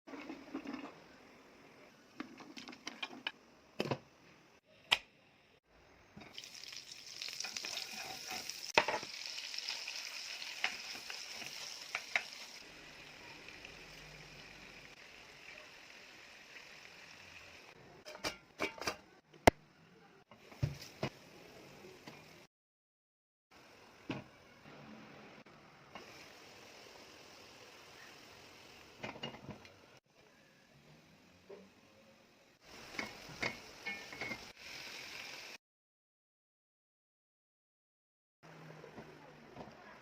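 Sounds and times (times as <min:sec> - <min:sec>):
food sizzling in a pan: 0:06.2 - 0:17.8, 0:25.9 - 0:29.7, 0:32.4 - 0:35.6.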